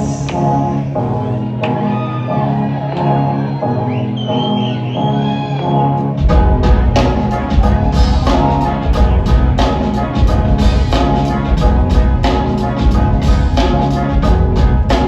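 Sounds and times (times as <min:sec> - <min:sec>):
bass guitar: 0:05.7 - 0:15.0
repeating instrumental melody: 0:05.7 - 0:15.0
drum kit beat: 0:06.2 - 0:15.0.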